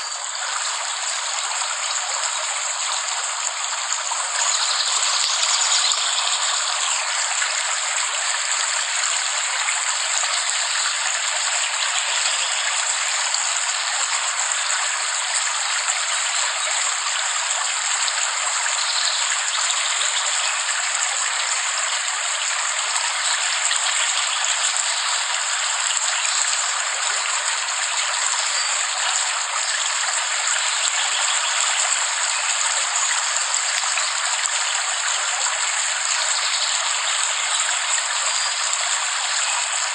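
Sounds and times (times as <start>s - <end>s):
rain falling steadily: 0.0s - 39.9s.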